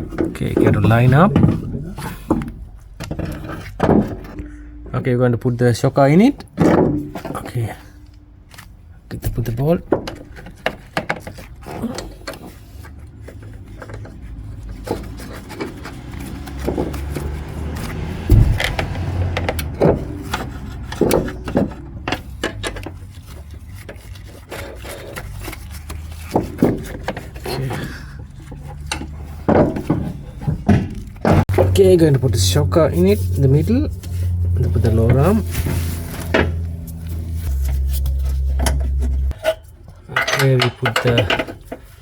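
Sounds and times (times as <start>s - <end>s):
metal parts scraping and knocking: 0.0s - 4.5s, 6.6s - 31.9s, 33.3s - 42.0s
steady low hum: 4.3s - 6.2s, 31.5s - 39.8s.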